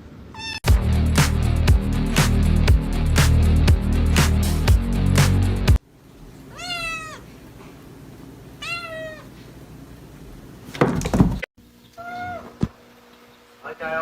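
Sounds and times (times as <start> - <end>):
cat meowing: 0.4 - 0.6, 6.5 - 7.3, 8.6 - 9.4, 12.0 - 12.6.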